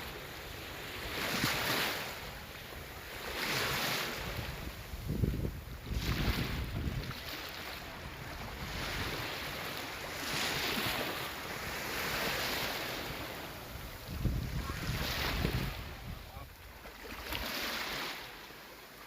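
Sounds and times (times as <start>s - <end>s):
sea waves washing in: 0.0s - 19.0s
wind buffeting microphone: 4.1s - 9.4s, 13.0s - 16.5s.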